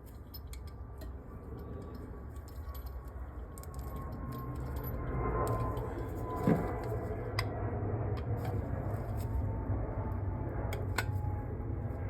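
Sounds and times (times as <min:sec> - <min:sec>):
small metal parts clicking: 0:00.0 - 0:06.4
low steady hum: 0:00.0 - 0:12.0.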